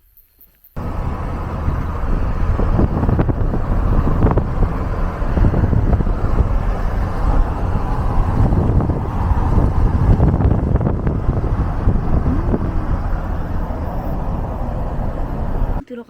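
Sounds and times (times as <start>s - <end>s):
wind buffeting microphone: 0.8s - 15.9s.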